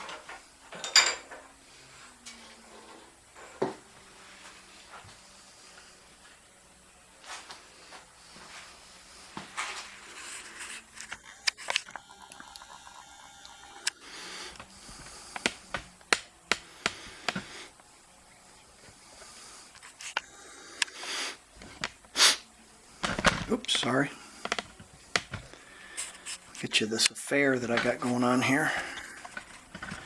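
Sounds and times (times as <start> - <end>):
metal parts and tools clicking: 0.7 - 1.4.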